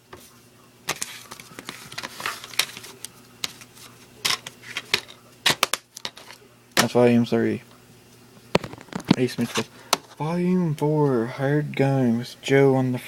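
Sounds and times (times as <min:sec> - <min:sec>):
paper rustling: 0:00.9 - 0:05.2.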